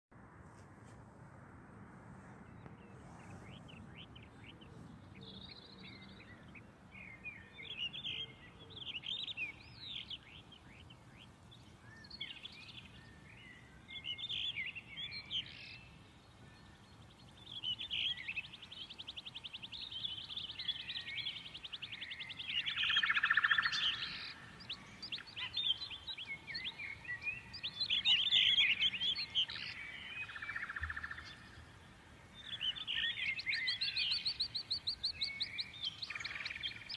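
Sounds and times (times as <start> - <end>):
songbirds chirping and singing: 2.4 - 36.9.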